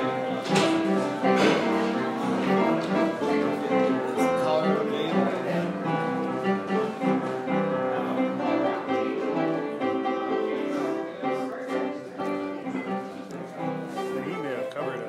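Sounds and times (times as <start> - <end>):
guitar: 0.0 - 15.0
strings: 0.0 - 15.0.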